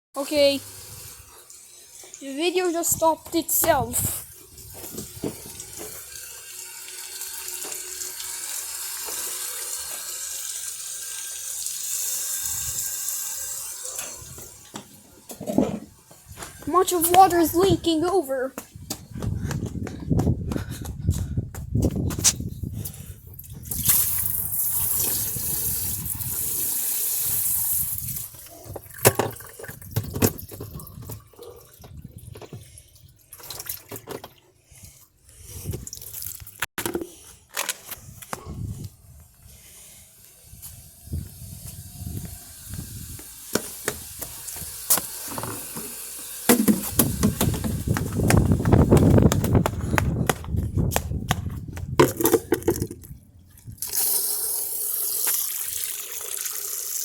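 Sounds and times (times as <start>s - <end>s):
water hissing and splashing: 0.4s - 14.6s, 23.7s - 28.6s, 39.6s - 48.4s.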